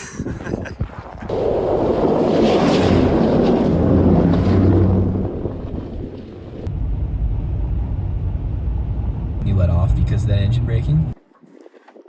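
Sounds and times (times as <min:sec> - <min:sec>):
wind buffeting microphone: 0:00.0 - 0:09.6
vehicle engine and road rumble: 0:02.7 - 0:11.2.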